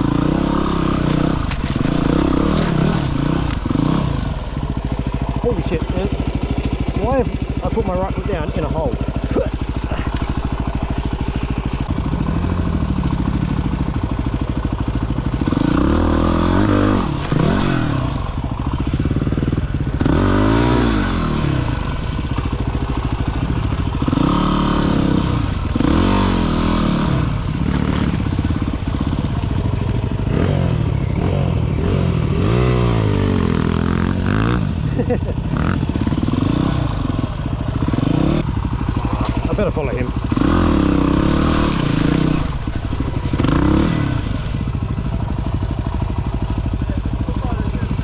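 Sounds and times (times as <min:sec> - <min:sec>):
dirt bike engine revving: 0:00.0 - 0:48.0.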